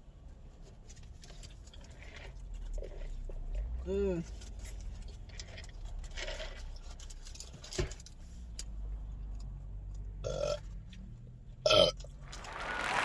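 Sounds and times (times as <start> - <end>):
woman burping: 11.7 - 11.9.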